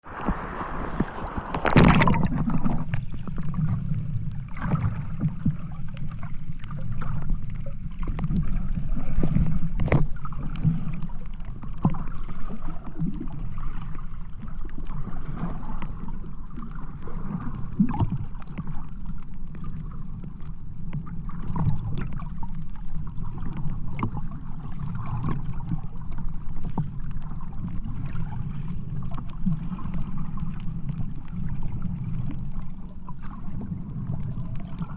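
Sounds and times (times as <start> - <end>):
wind on microphone: 0.0 - 3.2
sea water splashing: 0.0 - 34.9.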